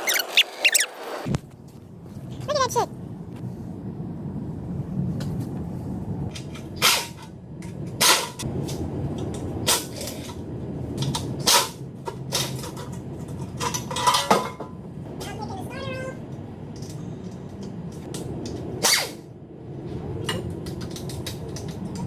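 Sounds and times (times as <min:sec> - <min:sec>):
steady low hum: 0:01.3 - 0:22.0
tools knocking and clanking: 0:11.0 - 0:14.8.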